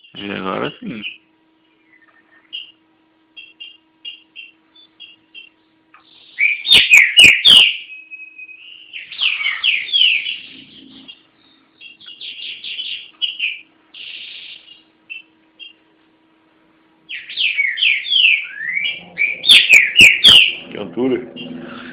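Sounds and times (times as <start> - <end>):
bird singing whistled phrases: 3.4 - 15.8, 17.1 - 20.7.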